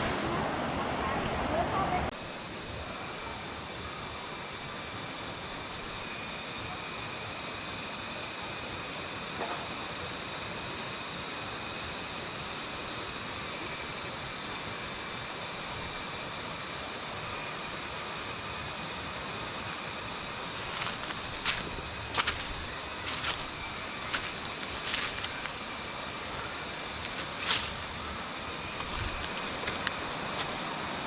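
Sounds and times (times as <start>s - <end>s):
stream rushing: 0.0s - 2.1s, 20.4s - 31.0s.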